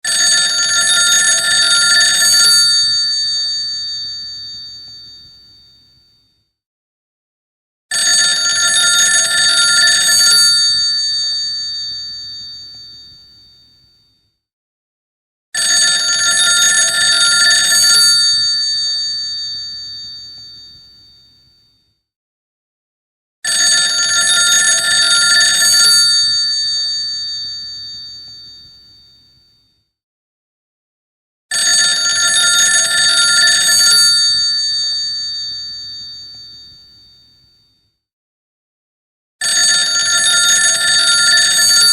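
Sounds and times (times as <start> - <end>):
telephone bells ringing: 0.1 - 5.8, 7.9 - 13.7, 15.6 - 21.3, 23.4 - 29.2, 31.5 - 37.4, 39.4 - 41.9.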